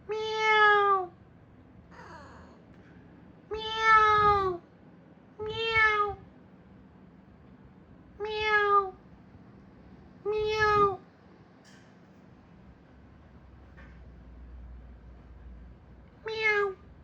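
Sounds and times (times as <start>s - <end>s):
cat meowing: 0.1s - 1.2s, 3.5s - 4.6s, 5.4s - 6.2s, 8.2s - 9.0s, 10.3s - 11.0s, 16.2s - 16.8s.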